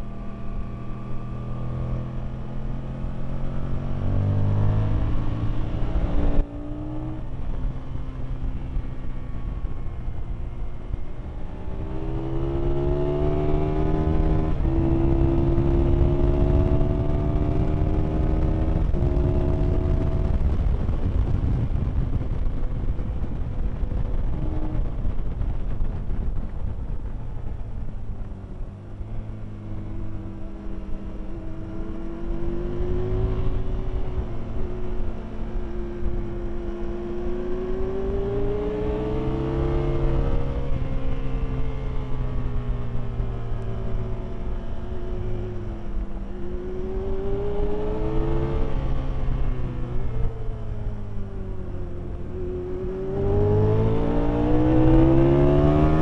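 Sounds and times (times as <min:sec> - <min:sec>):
motorcycle engine accelerating: 0:00.0 - 0:56.0
wind rush: 0:13.6 - 0:30.1.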